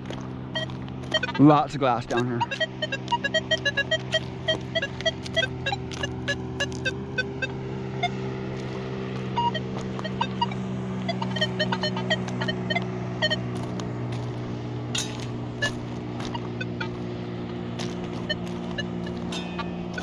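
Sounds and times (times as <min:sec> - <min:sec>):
steady low hum: 0:00.0 - 0:20.0
metal detector short beeps: 0:00.6 - 0:01.4, 0:02.1 - 0:07.3, 0:09.4 - 0:13.5, 0:18.2 - 0:20.0.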